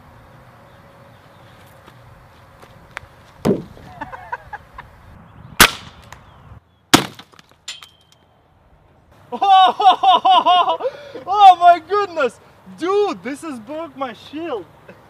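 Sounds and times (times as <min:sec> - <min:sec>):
small crack with high ring: 0:07.1 - 0:08.3.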